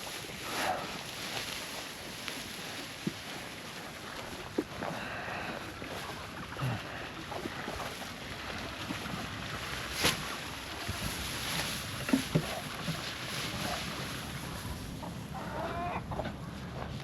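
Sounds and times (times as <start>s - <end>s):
dry hay rustling: 0.0s - 17.0s.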